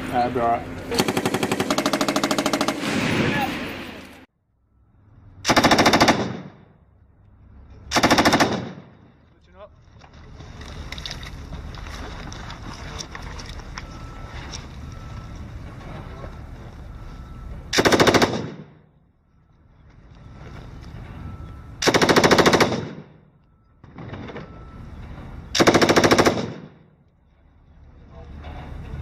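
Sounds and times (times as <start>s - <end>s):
machine gun bursts: 1.0s - 2.9s, 5.5s - 6.5s, 7.9s - 8.8s, 17.8s - 18.6s, 21.8s - 23.0s, 25.6s - 26.6s.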